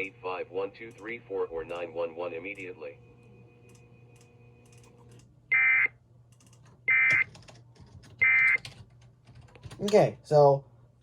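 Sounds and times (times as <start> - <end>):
keyboard typing clicks: 6.3 - 10.0.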